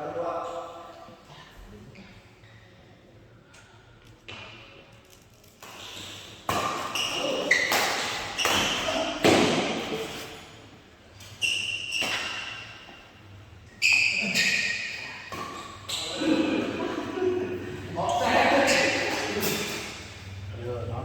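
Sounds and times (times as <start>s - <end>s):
racket hitting shuttlecock: 6.5s - 9.9s.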